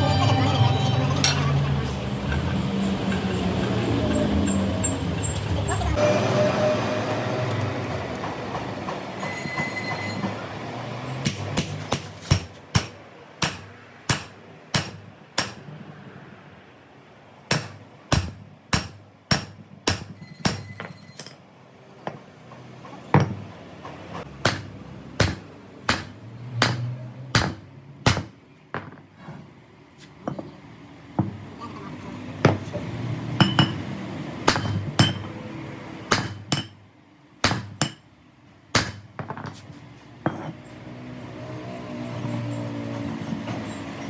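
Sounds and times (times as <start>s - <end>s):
hammer striking metal: 11.2s - 15.7s, 17.5s - 21.4s, 24.2s - 28.4s, 33.4s - 35.5s, 36.1s - 36.8s, 37.4s - 38.0s, 38.7s - 39.6s.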